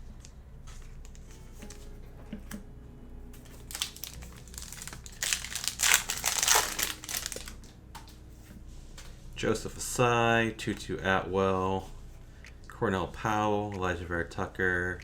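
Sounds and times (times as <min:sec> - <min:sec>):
plastic wrapper crinkling: 0:03.5 - 0:08.2.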